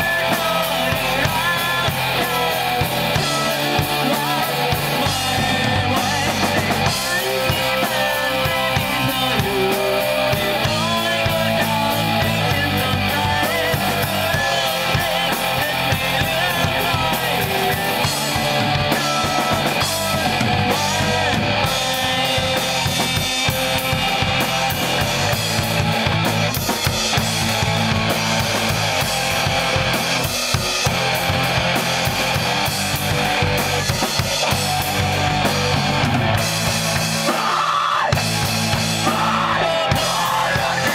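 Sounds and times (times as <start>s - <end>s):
drum kit beat: 0.0s - 40.9s
electric guitar: 0.0s - 40.9s.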